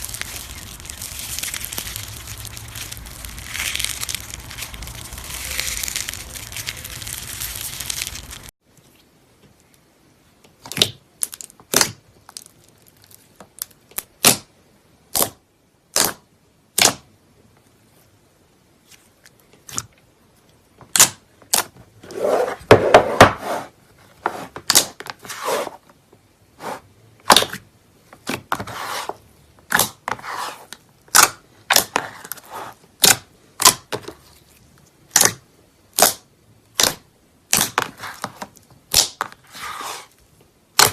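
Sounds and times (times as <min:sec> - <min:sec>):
slime crinkly crunching: 0:00.0 - 0:08.5, 0:11.2 - 0:14.1.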